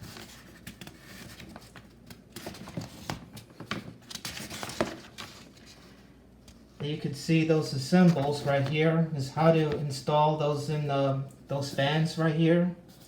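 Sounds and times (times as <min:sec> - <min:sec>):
paper pages rustling: 0:00.0 - 0:06.8.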